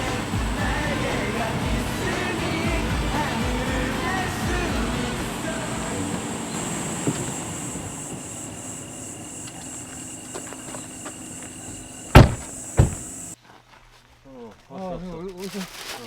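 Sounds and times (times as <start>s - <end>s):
loud thumps: 12.1s - 13.2s.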